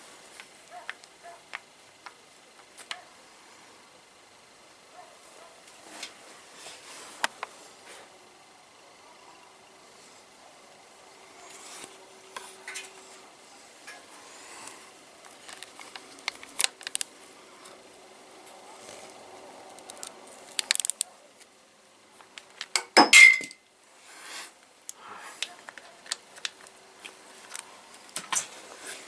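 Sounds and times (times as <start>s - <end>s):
metal tools clinking: 22.8s - 23.6s.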